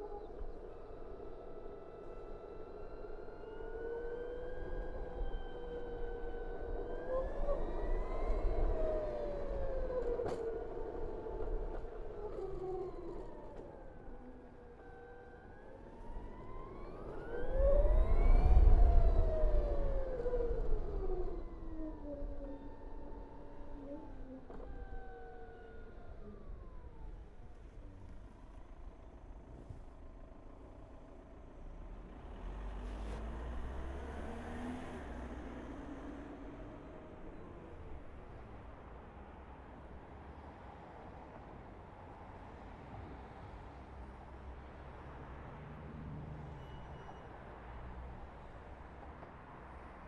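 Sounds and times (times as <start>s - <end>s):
wind and road noise: 0.0s - 50.0s
electric scooter motor whine: 0.1s - 31.6s.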